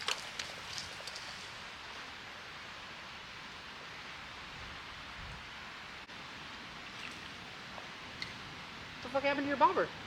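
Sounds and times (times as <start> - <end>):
creek flowing: 5.6 - 8.8.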